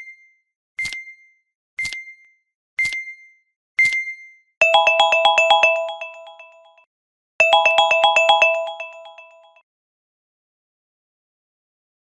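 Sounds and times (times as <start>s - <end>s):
marimba-like alarm ringtone: 4.6s - 6.8s, 7.4s - 9.6s.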